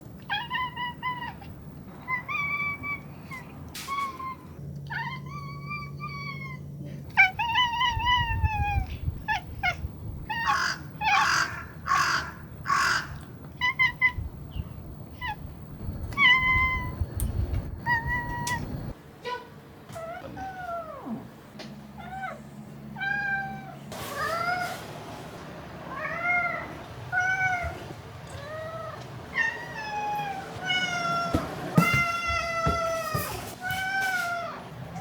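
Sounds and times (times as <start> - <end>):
cat meowing: 0.3 - 14.2, 25.9 - 34.7.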